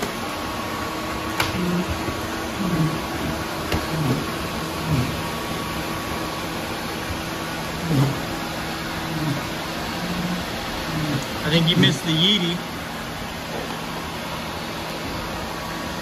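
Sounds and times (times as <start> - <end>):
robot vacuums whirring: 1.3 - 12.6.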